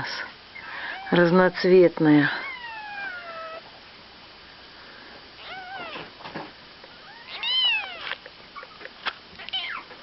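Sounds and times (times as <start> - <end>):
kitten mewing: 5.4 - 6.1, 7.1 - 9.9.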